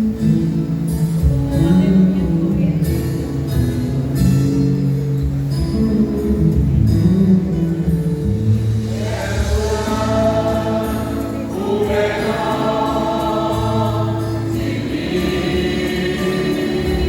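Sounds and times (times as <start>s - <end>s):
instrumental backing: 0.0s - 17.0s
vocal group singing in harmony: 8.7s - 17.0s.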